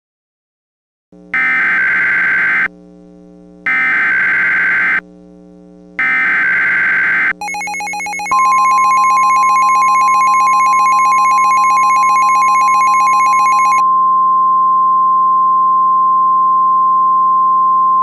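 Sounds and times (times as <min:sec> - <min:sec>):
loud steady alert tone: 0:06.0 - 0:13.8
screeching data tone bursts: 0:06.0 - 0:13.8.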